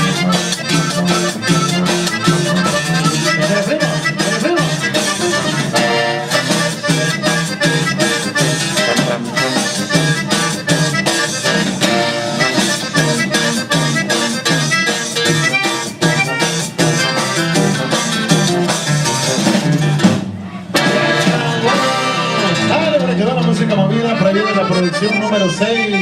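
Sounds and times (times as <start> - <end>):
repeating bass beat: 0.0 - 20.0
upbeat band music with accordion: 0.0 - 26.0.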